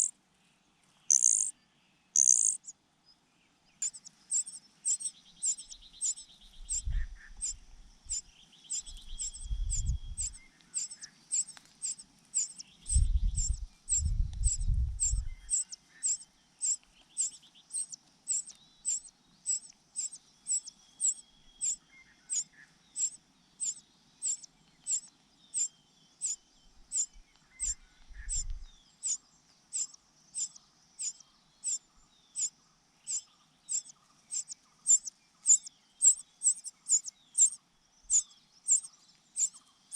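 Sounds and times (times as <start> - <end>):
small birds chirping: 0.9 - 39.9
cuckoo chick begging call: 1.1 - 1.5, 2.2 - 2.7, 3.8 - 22.4, 25.6 - 29.2.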